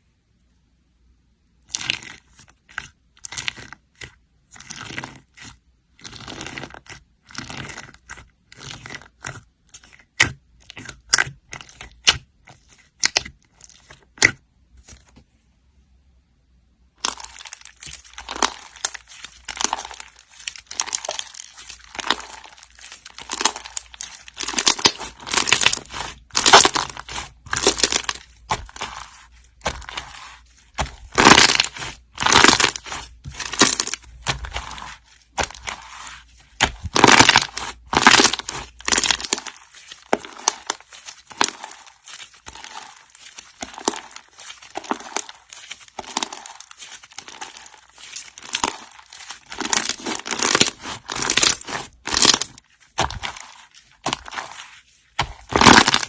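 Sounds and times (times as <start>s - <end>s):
crunchy slime being squeezed: 16.9s - 56.0s.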